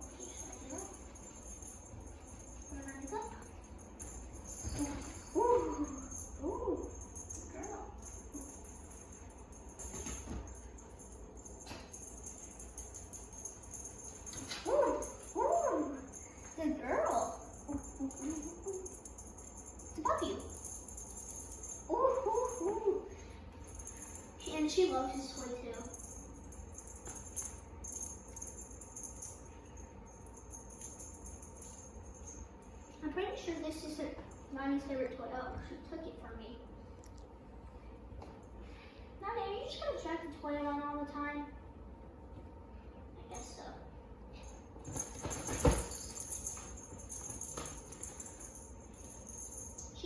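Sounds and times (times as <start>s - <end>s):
cat toy jingling and rattling: 0.0s - 34.5s, 44.4s - 50.0s.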